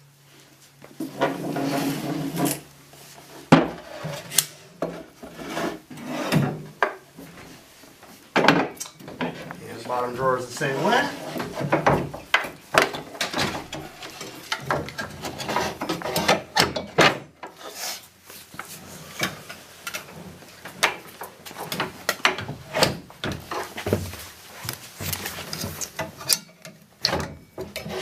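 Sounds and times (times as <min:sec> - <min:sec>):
drawer scraping on metal tracks: 0:01.0 - 0:02.7, 0:03.4 - 0:06.7, 0:09.2 - 0:12.1, 0:13.0 - 0:18.0, 0:27.7 - 0:28.0.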